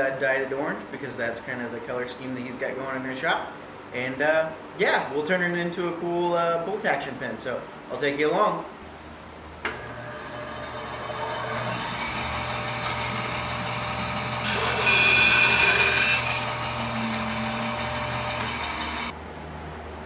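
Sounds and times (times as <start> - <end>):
power tool cutting wood: 9.9 - 19.1.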